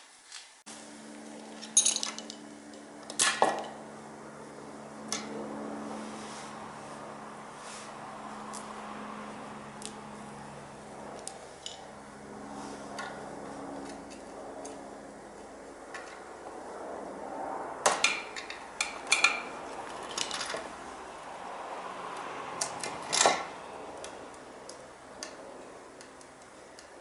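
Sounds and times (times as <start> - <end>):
metal tools clinking: 1.5 - 2.5.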